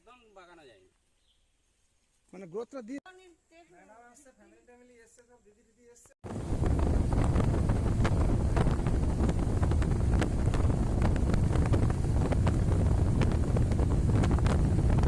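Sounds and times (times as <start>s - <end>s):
wind buffeting microphone: 6.2s - 15.0s.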